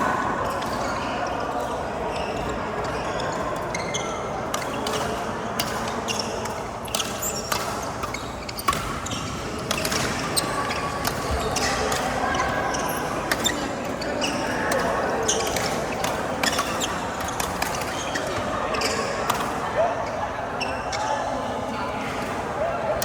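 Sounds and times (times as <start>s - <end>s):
sports hall background noise: 0.0s - 23.0s
rackets striking shuttlecock: 4.5s - 12.7s.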